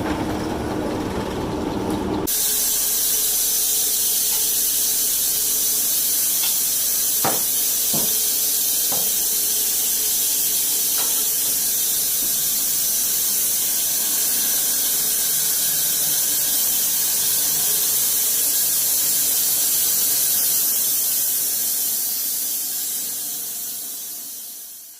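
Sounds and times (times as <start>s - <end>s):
sharp knocks: 7.2s - 8.2s.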